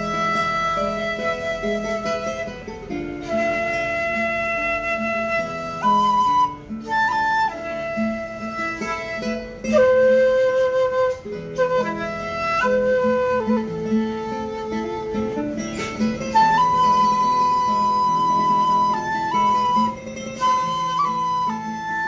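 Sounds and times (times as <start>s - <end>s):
acoustic guitar: 0.0s - 22.0s
shakuhachi slow melody: 0.0s - 22.0s.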